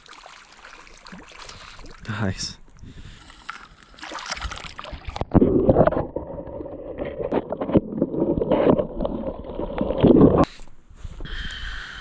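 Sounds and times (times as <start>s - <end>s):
water splashing and sloshing: 0.0s - 10.5s.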